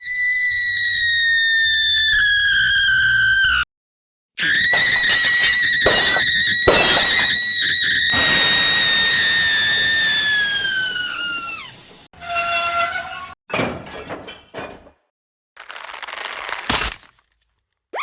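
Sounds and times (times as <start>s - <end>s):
crashing clatters: 4.6s - 7.6s, 13.5s - 15.0s
cartoon steam whistle: 5.8s - 12.0s
steam hiss: 8.2s - 12.1s.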